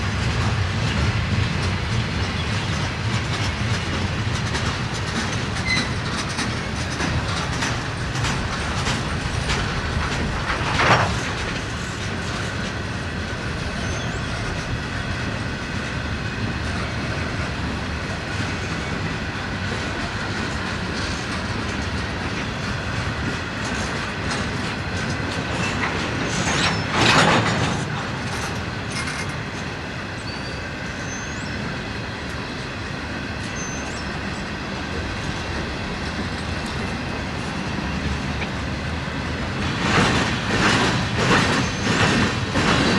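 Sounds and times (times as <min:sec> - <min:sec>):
freight train rumble: 0:00.0 - 0:42.9
train wheels clattering over rail joints: 0:00.0 - 0:42.9.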